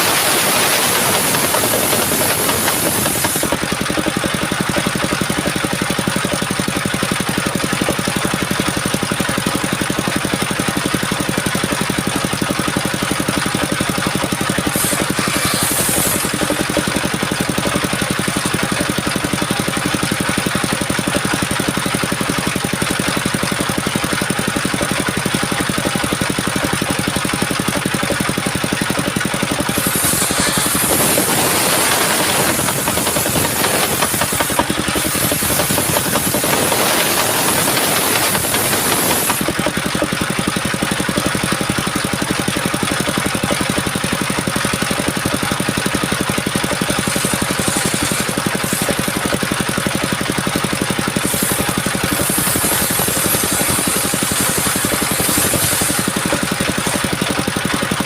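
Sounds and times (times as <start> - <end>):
loud hiss: 0.0 - 3.6, 14.7 - 16.5, 29.7 - 39.5, 51.2 - 56.5
sawmill engine running: 0.0 - 58.0.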